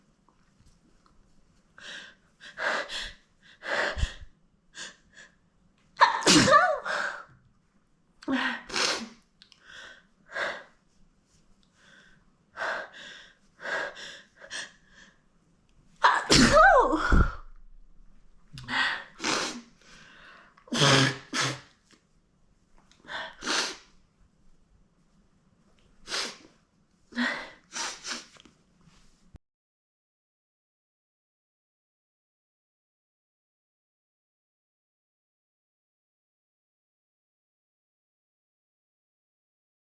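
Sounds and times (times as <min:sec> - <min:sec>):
woman sneezing: 0:06.0 - 0:07.0, 0:16.0 - 0:17.4, 0:20.7 - 0:21.7.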